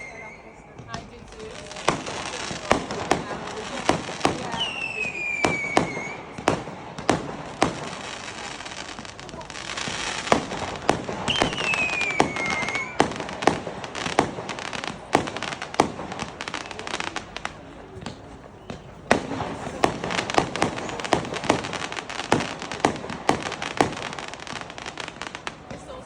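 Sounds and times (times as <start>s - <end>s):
descending firework whistle: 0.0s - 3.0s, 4.4s - 6.6s, 9.4s - 14.3s
fireworks bangs: 0.0s - 26.0s.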